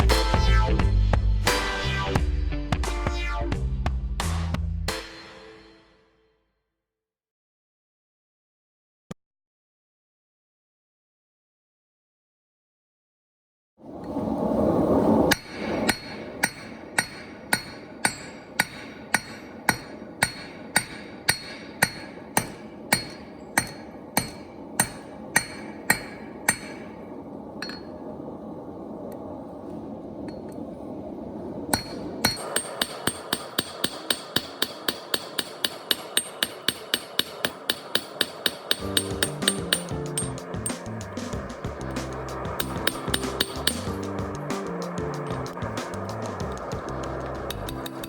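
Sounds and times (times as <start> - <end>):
hammer striking anvil ringing: 4.9 - 6.1, 15.9 - 26.8, 31.8 - 41.1, 41.9 - 45.5, 47.5 - 48.0
rush of noise: 13.8 - 34.5, 37.4 - 48.0.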